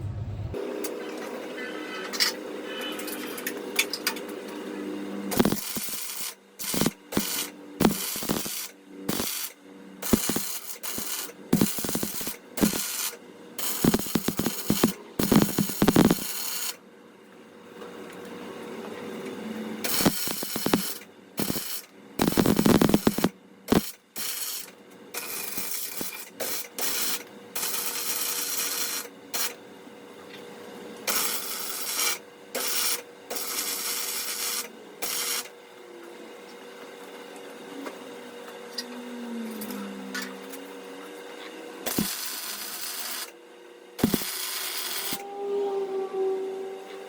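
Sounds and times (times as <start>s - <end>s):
welding arc crackling: 5.3s - 16.8s, 19.8s - 29.6s, 31.1s - 35.5s, 41.8s - 43.3s, 44.0s - 45.2s
faint hum: 37.6s - 42.7s.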